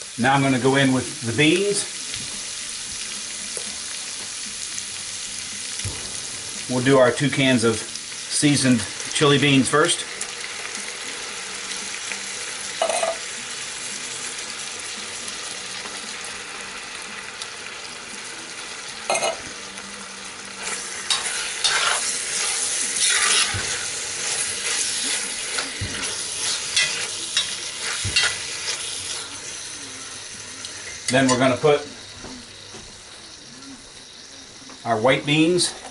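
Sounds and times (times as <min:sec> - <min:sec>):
meat sizzling in a pot: 0:00.0 - 0:35.9
stirring and scraping: 0:21.1 - 0:29.3.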